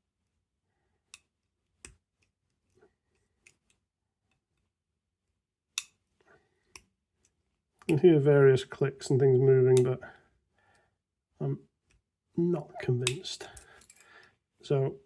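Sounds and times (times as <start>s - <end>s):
lock pick clicks: 5.8s - 6.0s.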